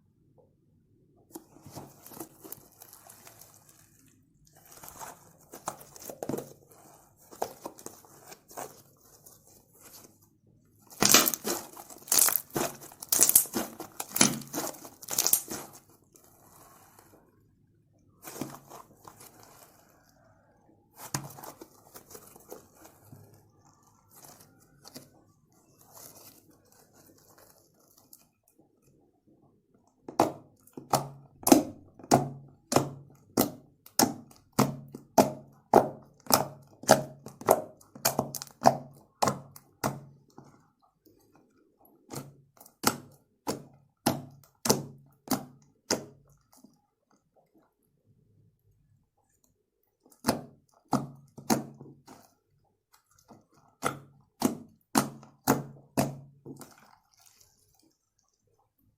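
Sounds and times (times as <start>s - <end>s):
slime popping when squeezed: 11.0s - 15.6s.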